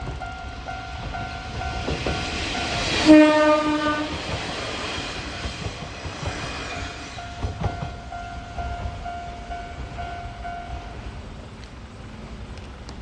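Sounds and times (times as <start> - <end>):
level crossing warning bell: 0.0 - 6.0, 6.6 - 11.4
train wheels clattering: 0.0 - 11.8
train horn: 2.6 - 4.2.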